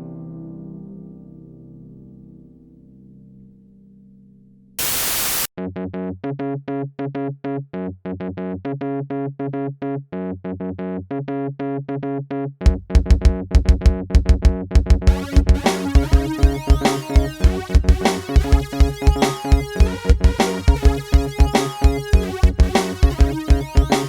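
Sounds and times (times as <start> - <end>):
burst of noise: 4.8 - 5.5
heavy electronic beat: 15.1 - 24.0
repeating synth notes: 15.1 - 24.0.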